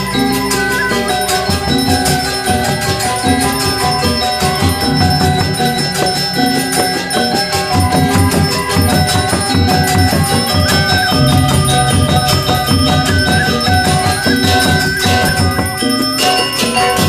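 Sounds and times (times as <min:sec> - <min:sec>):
gamelan metallophones and bells: 0:00.0 - 0:17.0.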